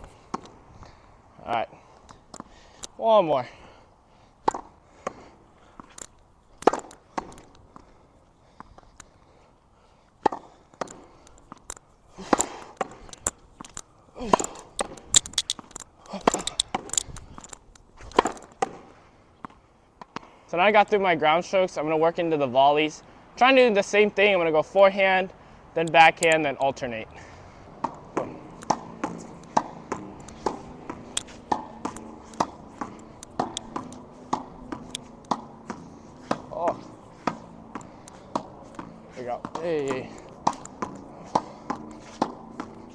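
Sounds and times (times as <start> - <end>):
racket hitting tennis ball: 0.0 - 0.6, 4.4 - 7.8, 10.2 - 20.3, 27.4 - 42.9
ball striking wall: 27.8 - 42.9.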